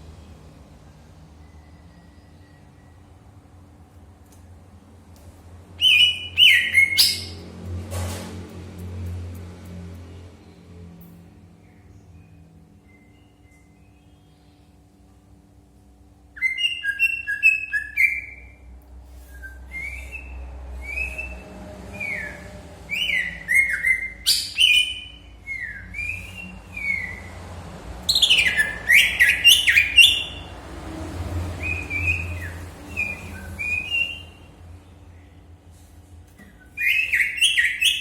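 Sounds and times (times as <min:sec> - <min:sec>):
birds chirping: 0:28.1 - 0:30.7, 0:31.5 - 0:35.6, 0:36.4 - 0:38.0.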